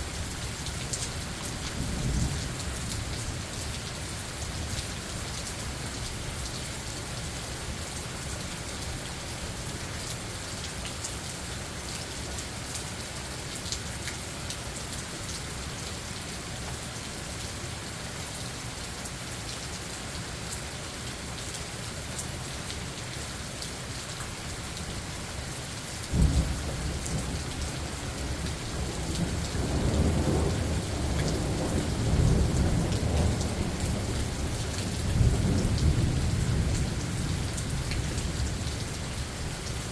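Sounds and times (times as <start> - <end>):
rain falling in forest: 0.0 - 39.9
thunder clap and rolling rumble: 26.1 - 37.7.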